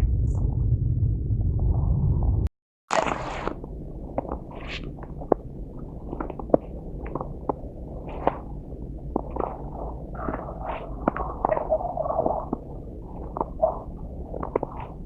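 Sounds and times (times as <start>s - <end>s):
low steady rumble: 0.0s - 2.5s
snow crunching underfoot: 2.9s - 15.0s.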